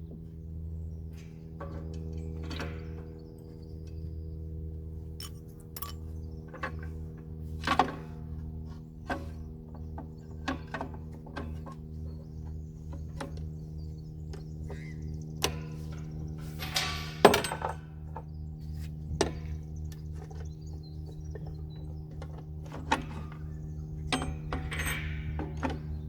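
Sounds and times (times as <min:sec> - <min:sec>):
tools clanking and knocking: 0:01.2 - 0:04.1, 0:05.2 - 0:13.7, 0:14.3 - 0:18.4, 0:19.1 - 0:26.0.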